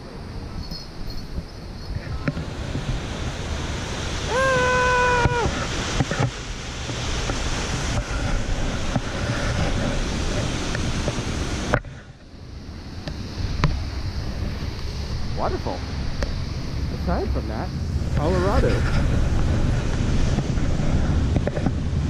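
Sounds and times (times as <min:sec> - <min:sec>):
wind buffeting microphone: 0:00.0 - 0:22.0
waterfall rushing: 0:02.3 - 0:08.9.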